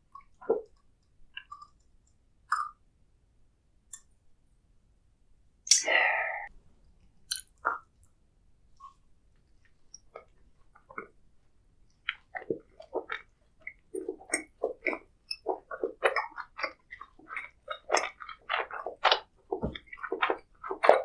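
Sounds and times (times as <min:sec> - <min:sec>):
person chewing food: 0:00.0 - 0:02.8, 0:07.3 - 0:08.2, 0:08.8 - 0:21.0.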